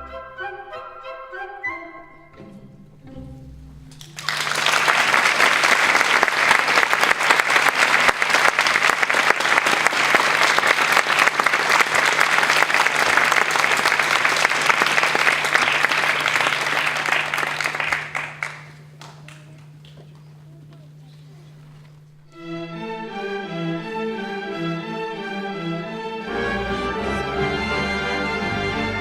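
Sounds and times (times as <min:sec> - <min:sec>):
audience applauding: 0:04.0 - 0:20.0.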